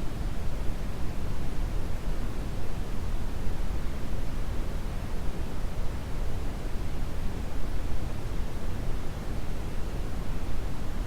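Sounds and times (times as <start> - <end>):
brown noise hiss: 0.0 - 11.0.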